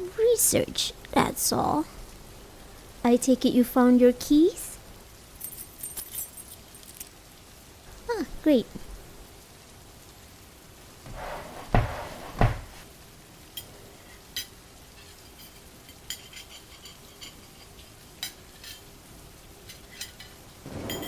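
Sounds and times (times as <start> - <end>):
heavy dish knocks: 11.1 - 12.8
cutlery clinking on crockery: 14.4 - 18.9, 19.6 - 20.4.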